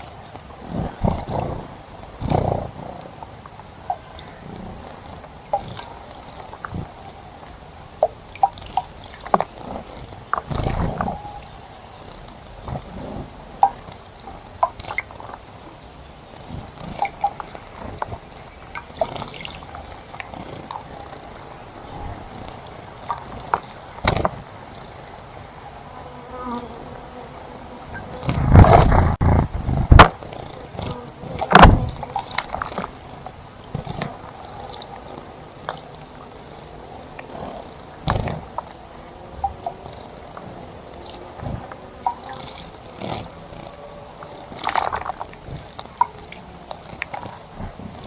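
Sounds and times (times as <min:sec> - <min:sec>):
birds splashing in water: 0:31.3 - 0:48.0.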